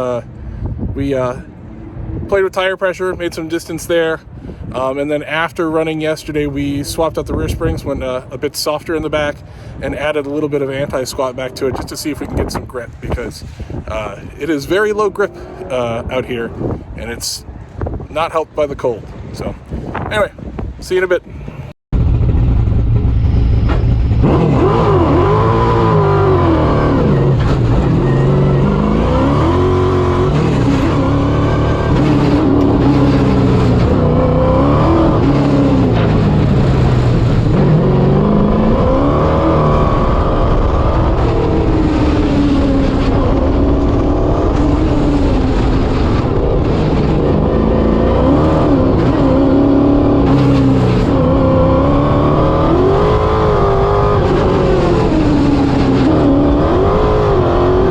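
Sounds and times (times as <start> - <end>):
race car engine accelerating: 22.3 - 57.9.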